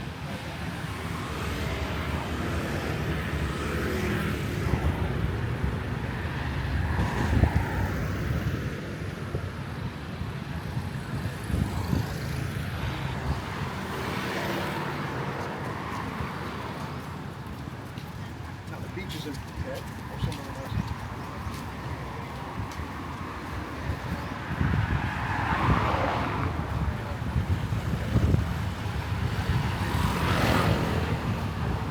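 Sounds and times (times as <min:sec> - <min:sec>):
vehicles passing on city road: 0:00.0 - 0:31.9.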